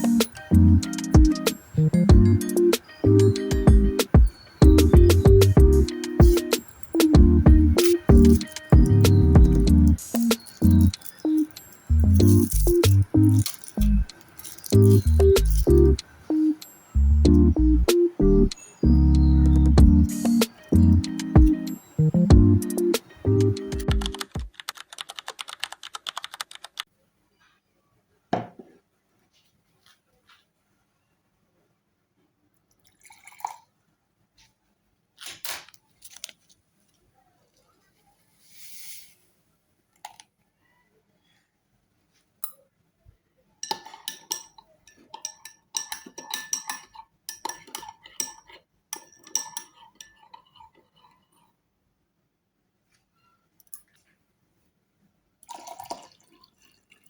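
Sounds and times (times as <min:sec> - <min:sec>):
computer keyboard typing: 0:00.0 - 0:16.0, 0:22.3 - 0:26.9
background music: 0:00.0 - 0:24.4
knock: 0:28.4 - 0:28.7
utensil clinking against dish: 0:43.6 - 0:51.4.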